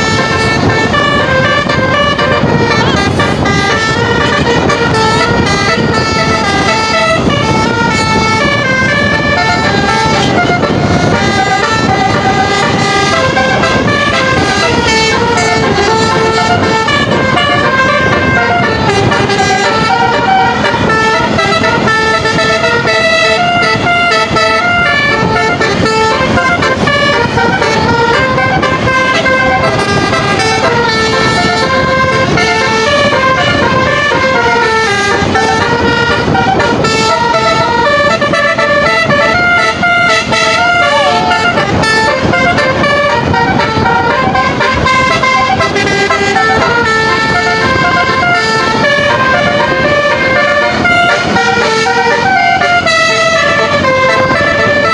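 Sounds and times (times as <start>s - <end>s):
musical bus horn tune: 0.0s - 54.9s.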